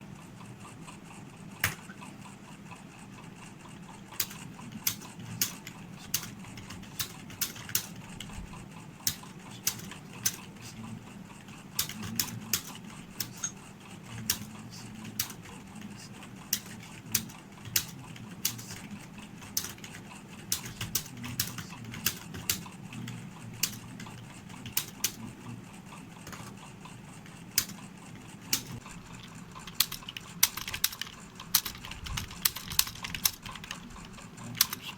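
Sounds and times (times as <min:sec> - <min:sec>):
low steady hum: 0:00.0 - 0:34.9
keyboard keystrokes clicking: 0:04.2 - 0:08.4, 0:09.1 - 0:10.5, 0:11.8 - 0:13.6, 0:16.5 - 0:18.8, 0:19.4 - 0:25.2, 0:28.5 - 0:34.9.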